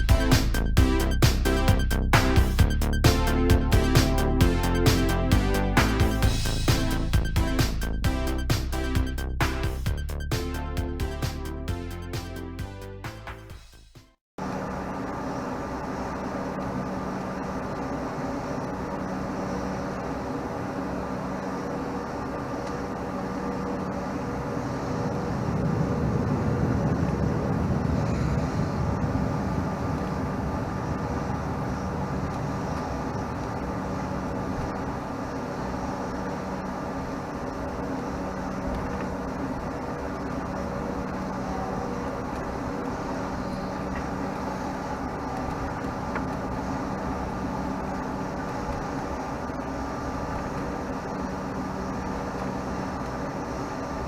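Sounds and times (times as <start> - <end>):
deep rumble: 0.0 - 13.6
jet engines droning in cabin: 14.4 - 54.0.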